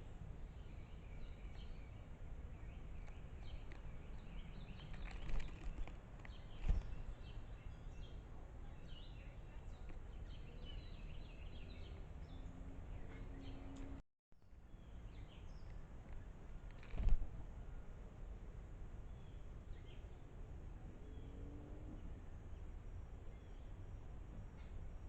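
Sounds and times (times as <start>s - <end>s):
small birds chirping: 0.0s - 14.0s, 14.8s - 16.9s, 19.1s - 20.4s, 21.0s - 24.0s.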